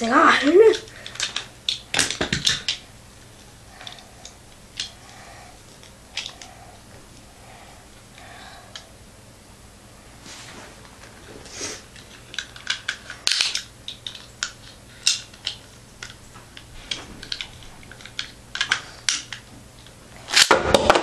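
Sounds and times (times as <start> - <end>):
plastic toy parts clicking: 0.7 - 2.8, 12.0 - 16.2, 17.2 - 19.4.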